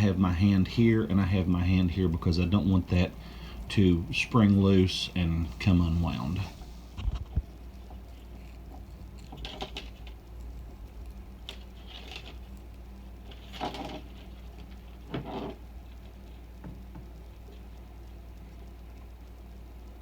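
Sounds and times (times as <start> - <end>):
steady low hum: 0.0 - 20.0
clicks and rustles of small parts: 6.9 - 17.8.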